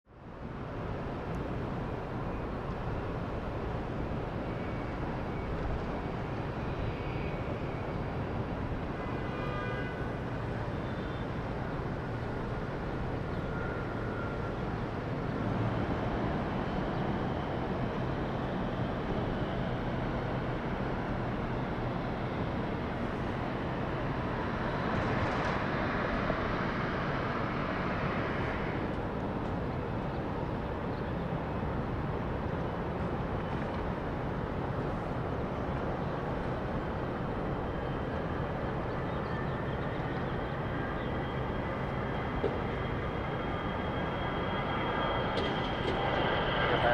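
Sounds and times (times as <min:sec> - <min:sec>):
jet engine noise: 0:00.1 - 0:46.9
faint whistling tones: 0:04.4 - 0:08.1, 0:37.6 - 0:46.9.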